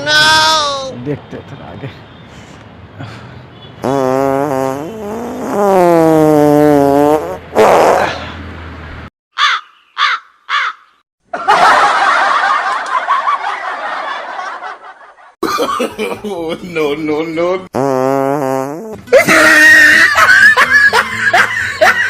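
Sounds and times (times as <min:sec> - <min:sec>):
fart noise: 0:03.8 - 0:08.3, 0:17.7 - 0:19.6.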